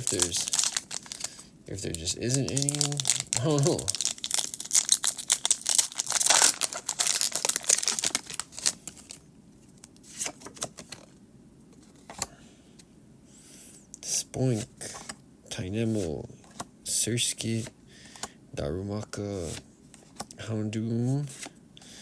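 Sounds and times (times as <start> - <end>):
foil wrapper crinkling and tearing: 0.0 - 9.2.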